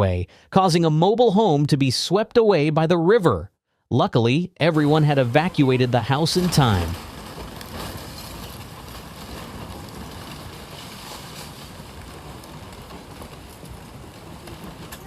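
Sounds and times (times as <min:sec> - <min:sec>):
flooding river rushing: 0:04.6 - 0:15.0.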